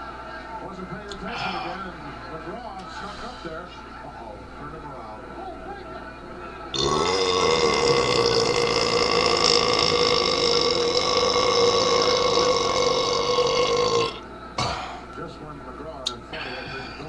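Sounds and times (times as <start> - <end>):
long belch: 6.8 - 14.9.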